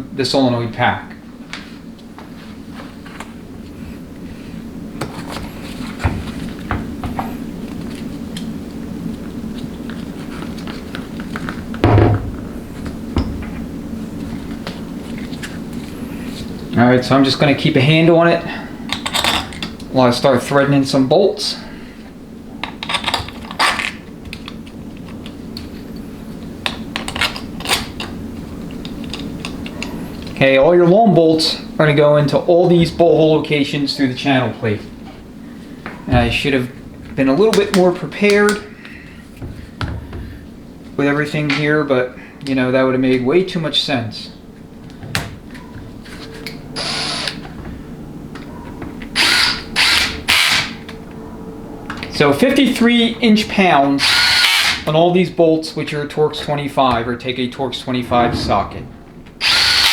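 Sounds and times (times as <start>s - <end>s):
steady low hum: 0.0s - 59.9s
power driver spinning bolts: 59.4s - 59.9s.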